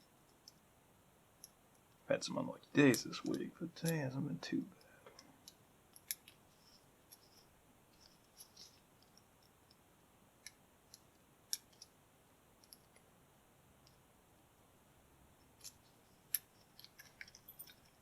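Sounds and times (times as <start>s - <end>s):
lock pick metallic clicks: 5.2s - 6.4s, 15.5s - 18.0s.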